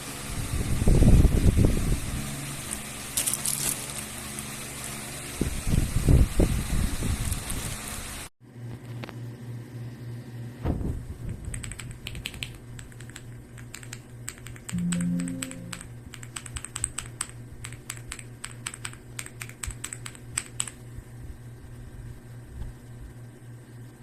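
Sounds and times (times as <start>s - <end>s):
laptop keyboard typing: 11.4s - 20.8s
brief low tone: 14.7s - 15.9s.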